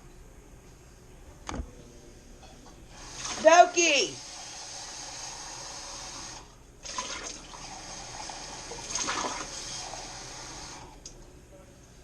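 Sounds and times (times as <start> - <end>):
water running with rushing hiss: 2.9 - 10.9.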